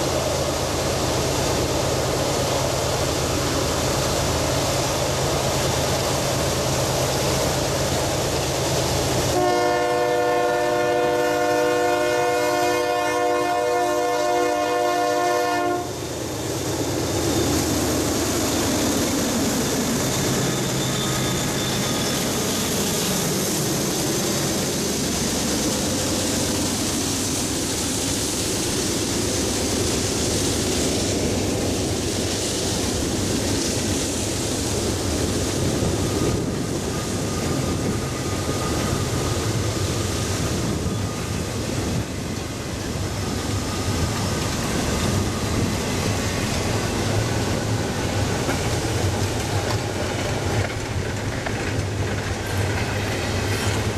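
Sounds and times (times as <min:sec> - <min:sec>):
locomotive engine drone: 0:00.0 - 0:53.9
train rumbling and clattering past: 0:00.0 - 0:53.9
train horn blast: 0:09.3 - 0:16.0.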